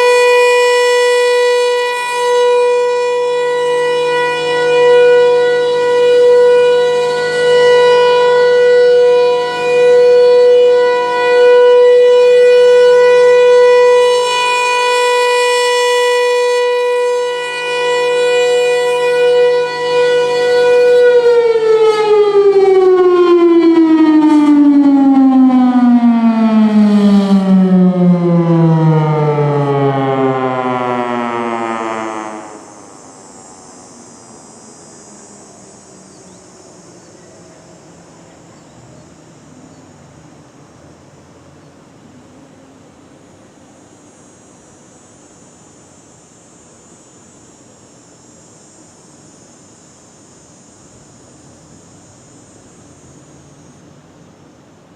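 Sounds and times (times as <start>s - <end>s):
siren winding down: 0.0s - 38.1s
tornado siren: 0.0s - 44.0s.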